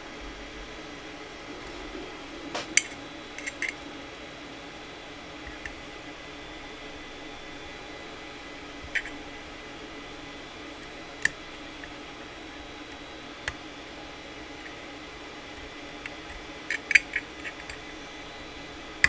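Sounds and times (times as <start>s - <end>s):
steady low hum: 0.0s - 19.0s
lock pick metallic clicks: 16.0s - 17.8s.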